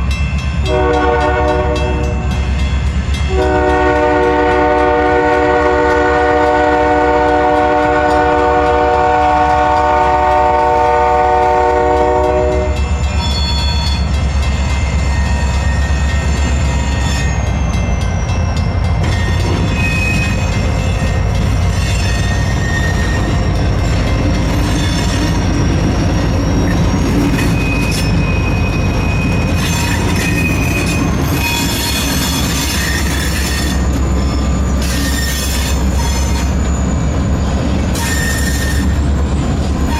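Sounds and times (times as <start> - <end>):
train rumbling: 0.0 - 39.9
wheels squealing on rails: 0.0 - 39.9
locomotive horn chord: 0.6 - 2.3, 3.3 - 12.9.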